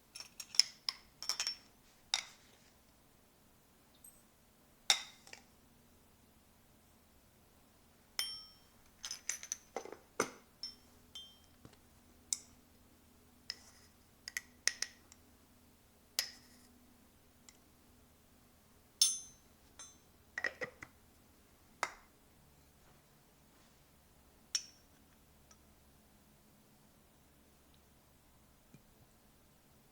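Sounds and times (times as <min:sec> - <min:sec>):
glass dishes clinking: 0:08.2 - 0:11.5, 0:19.0 - 0:20.5.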